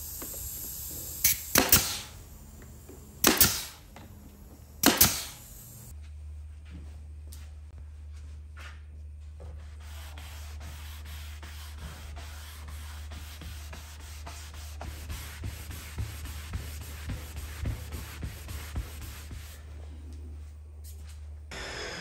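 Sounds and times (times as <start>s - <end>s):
sanding rasp: 9.7s - 19.6s.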